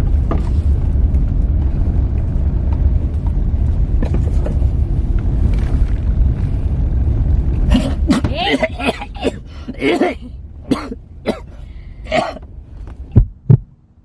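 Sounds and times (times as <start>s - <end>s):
car engine and road noise: 0.0s - 14.0s
person coughing: 7.7s - 12.4s.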